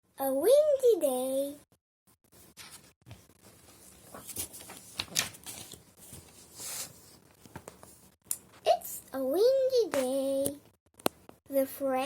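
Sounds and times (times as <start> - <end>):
faint rustles and soft clicks: 2.4 - 8.7.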